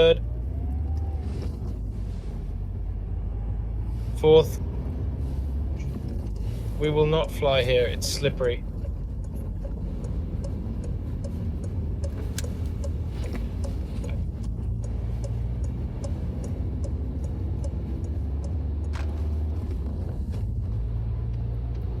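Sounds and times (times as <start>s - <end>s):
car engine and tyre drone: 0.0s - 22.0s
light regular ticking: 5.9s - 19.1s.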